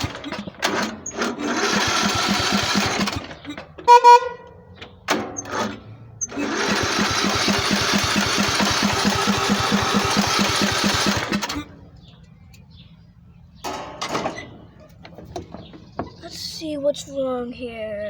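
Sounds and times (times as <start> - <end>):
lawnmower engine running: 0.0 - 12.2.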